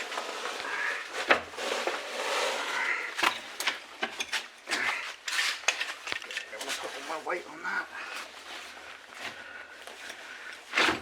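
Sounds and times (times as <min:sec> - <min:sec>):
rustling scrape: 0:00.0 - 0:03.1, 0:04.4 - 0:07.4.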